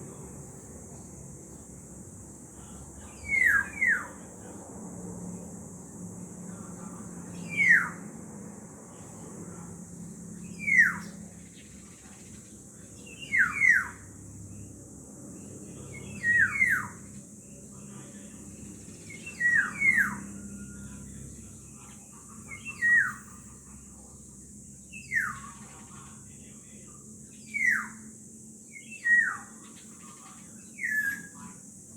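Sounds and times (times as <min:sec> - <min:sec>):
bird whistled calls: 0:03.1 - 0:04.2, 0:07.4 - 0:08.0, 0:10.5 - 0:11.1, 0:13.1 - 0:14.0, 0:16.0 - 0:17.0, 0:19.1 - 0:20.8, 0:22.5 - 0:23.3, 0:24.9 - 0:25.6, 0:27.4 - 0:28.1, 0:28.7 - 0:29.5, 0:30.8 - 0:31.4.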